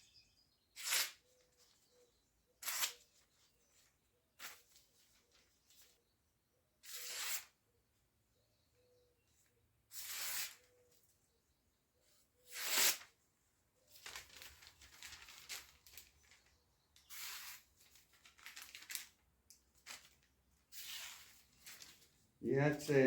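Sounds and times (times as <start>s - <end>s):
blade slicing through paper: 0.8s - 1.2s, 2.6s - 3.1s, 6.8s - 7.6s, 9.9s - 10.6s, 12.5s - 13.1s, 17.0s - 17.7s, 20.7s - 22.0s
paper rustling: 13.9s - 23.0s.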